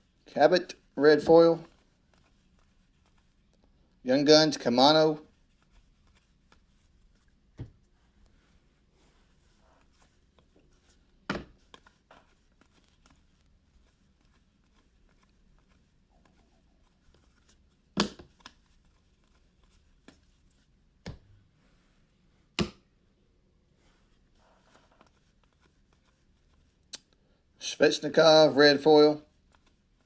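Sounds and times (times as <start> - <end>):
cards flicking and rustling: 0.8 - 3.6, 5.3 - 8.4, 9.2 - 21.2, 24.0 - 27.2, 29.3 - 30.0.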